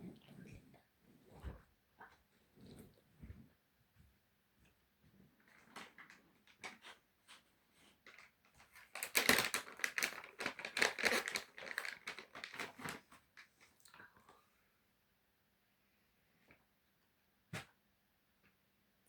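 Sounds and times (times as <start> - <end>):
crinkling and rustling scrapes: 0.0 - 13.8.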